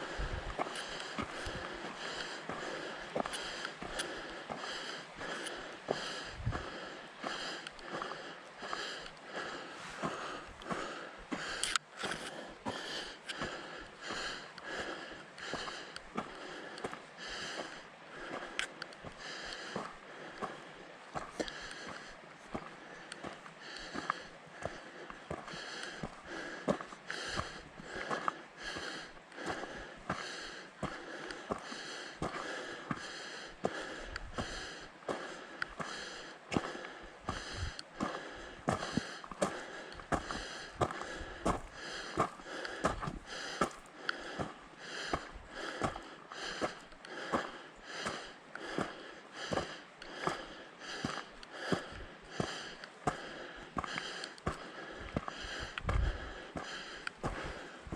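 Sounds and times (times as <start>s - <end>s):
footsteps crunching on dirt trail: 0.0s - 57.9s
heavy breathing: 0.0s - 57.9s.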